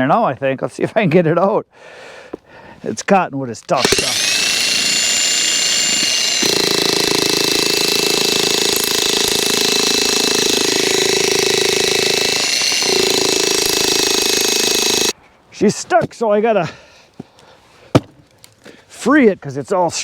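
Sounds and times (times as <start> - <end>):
jackhammer hammering rapidly: 3.8 - 15.1
jackhammer motor whine: 3.8 - 15.1.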